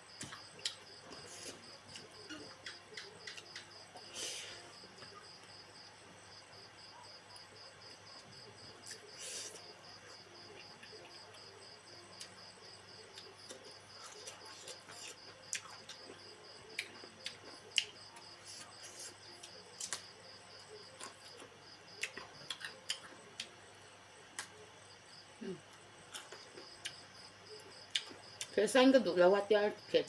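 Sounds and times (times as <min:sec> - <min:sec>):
crickets chirping: 0:00.0 - 0:30.0
chewing clicks and smacks: 0:01.9 - 0:03.7, 0:22.0 - 0:23.5, 0:27.9 - 0:28.5.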